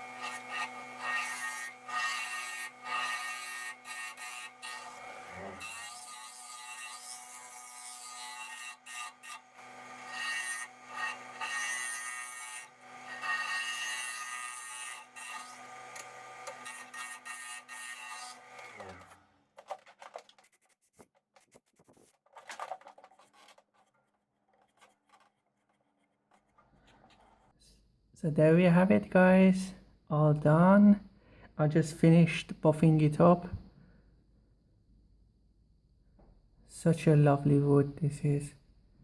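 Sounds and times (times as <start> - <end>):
wood lathe humming: 0.0 - 19.2
rubbing and handling noises: 18.8 - 27.6.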